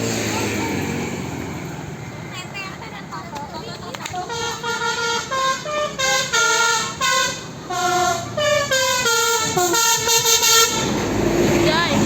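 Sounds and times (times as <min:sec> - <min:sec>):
musical bus horn tune: 0:04.2 - 0:11.2.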